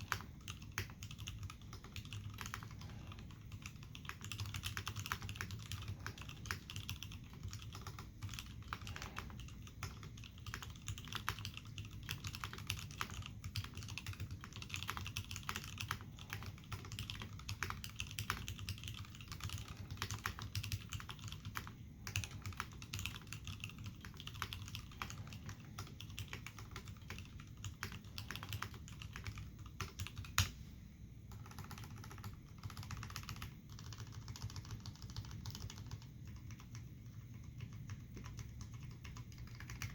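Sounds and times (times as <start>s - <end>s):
mechanical keyboard typing: 0.0s - 30.6s, 31.3s - 39.9s.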